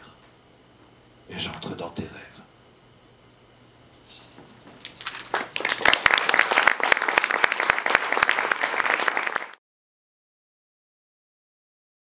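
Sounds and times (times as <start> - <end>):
audience applauding: 5.0 - 9.6.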